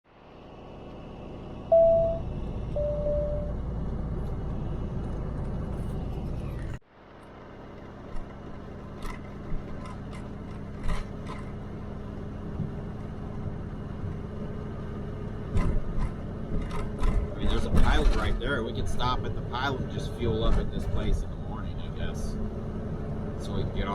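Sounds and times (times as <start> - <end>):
low hum: 0.1 - 7.4
road and engine noise in cab: 0.1 - 23.9
short beeping tones: 1.7 - 3.6.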